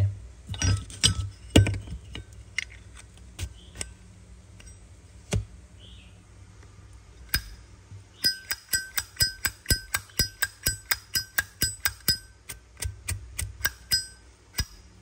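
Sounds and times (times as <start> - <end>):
metal lighter clicks and clinks: 8.2 - 12.9.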